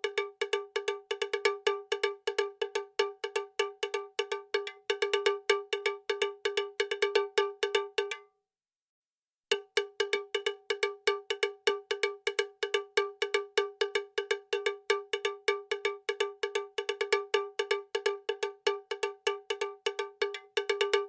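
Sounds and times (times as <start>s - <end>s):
rapid metallic cowbell strikes: 9.5s - 21.0s.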